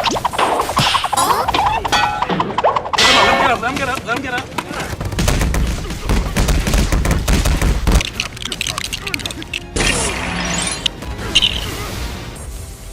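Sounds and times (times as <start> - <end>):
rapid barrage of impacts: 1.9 - 8.0.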